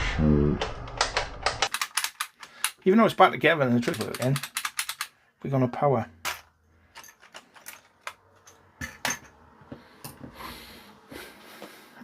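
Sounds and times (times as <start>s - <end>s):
small plastic and metal parts clicking: 0.9s - 2.8s, 3.7s - 5.2s.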